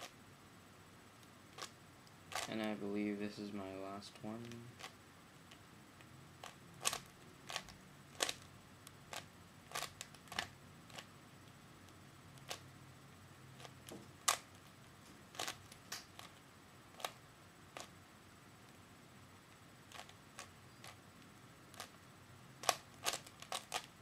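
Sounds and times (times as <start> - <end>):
puzzle cube plastic clicks: 1.6 - 2.5, 4.4 - 5.6, 6.4 - 8.5, 9.1 - 11.1, 12.4 - 12.6, 15.4 - 16.4, 17.0 - 17.2, 19.9 - 21.0, 21.7 - 22.0, 22.6 - 24.0.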